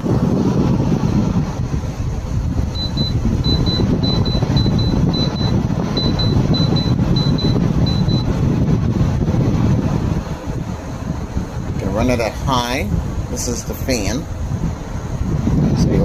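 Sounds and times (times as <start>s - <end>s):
air conditioner fan: 0.0s - 16.0s
high double beeps: 2.8s - 8.3s.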